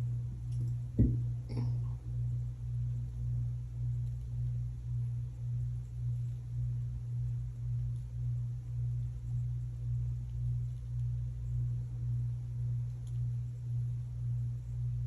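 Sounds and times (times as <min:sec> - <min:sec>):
low hum through a wall: 0:00.0 - 0:15.0.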